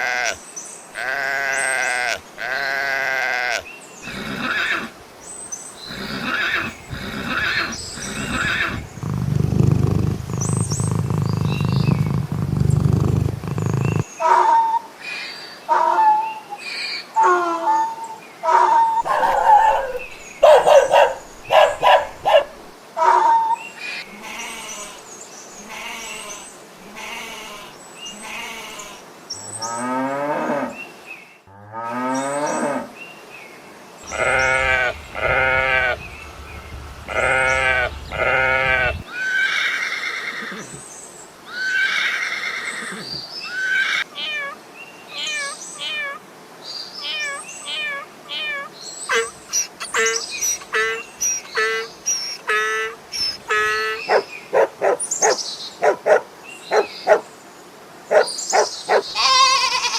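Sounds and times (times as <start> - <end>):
livestock bleating and calling: 0.0 - 0.4, 1.0 - 12.6, 23.8 - 29.0, 34.1 - 40.8, 58.9 - 59.9
short high animal calls: 1.0 - 12.8, 34.1 - 40.8, 47.0 - 54.2, 58.9 - 59.9.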